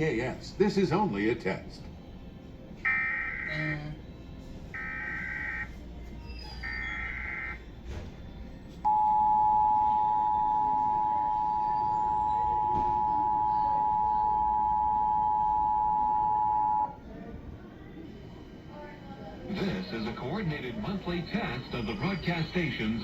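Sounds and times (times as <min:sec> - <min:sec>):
data burst tones: 0:02.9 - 0:03.8, 0:04.8 - 0:05.7, 0:06.6 - 0:07.6
two-tone attention signal: 0:02.9 - 0:03.9, 0:04.8 - 0:05.8, 0:06.6 - 0:07.6, 0:08.9 - 0:17.0.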